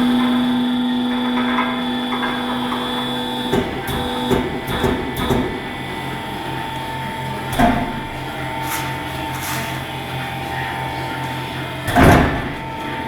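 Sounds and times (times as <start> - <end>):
machine motor humming: 0.0 - 13.0
metallic knocks and clanks: 0.1 - 5.7.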